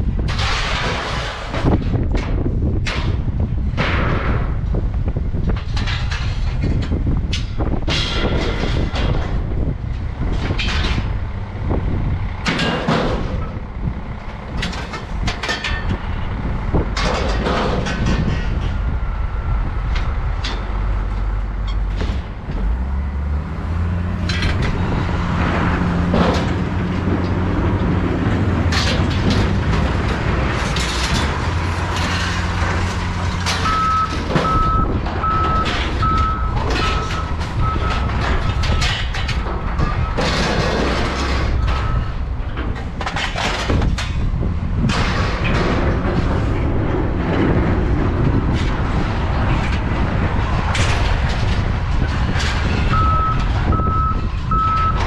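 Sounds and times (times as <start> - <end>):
heavy truck engine running: 0.0 - 55.0
metal clanks and crashes: 0.0 - 55.0
reversing alarm beeping: 33.6 - 38.1, 52.9 - 55.0.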